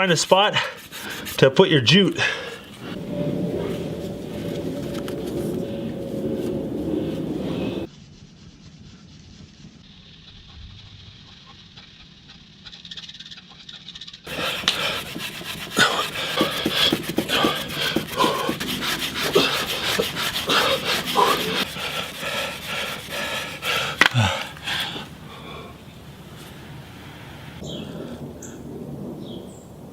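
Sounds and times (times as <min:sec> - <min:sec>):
wooden stick rubbing in groove: 0:00.0 - 0:01.7, 0:14.3 - 0:25.1
man panting: 0:02.2 - 0:03.0, 0:14.3 - 0:25.9.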